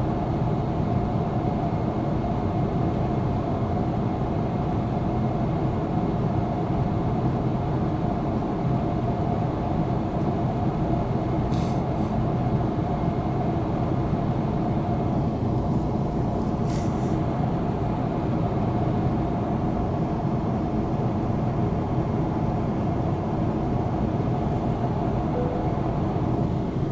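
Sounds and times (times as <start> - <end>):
low engine drone: 24.0 - 26.9.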